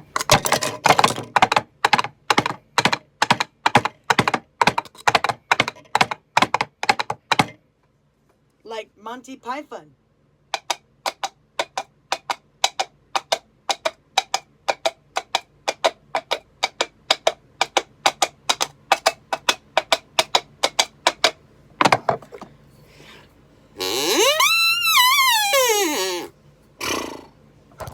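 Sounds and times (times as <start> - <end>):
coconut shells clip-clopping: 0.2 - 7.6, 10.6 - 22.1
horse whinny call: 23.8 - 27.3.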